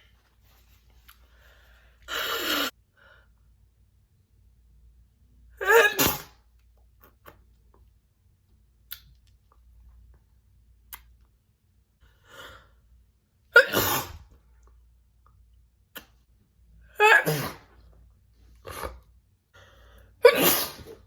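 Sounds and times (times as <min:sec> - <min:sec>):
woman sneezing loudly: 0:05.6 - 0:06.4, 0:13.6 - 0:14.3, 0:16.9 - 0:17.8, 0:20.2 - 0:21.0.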